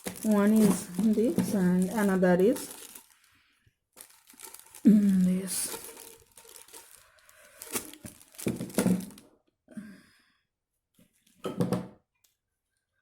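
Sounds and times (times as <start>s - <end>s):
plastic pipes clattering together: 0.0s - 2.0s, 7.7s - 9.3s.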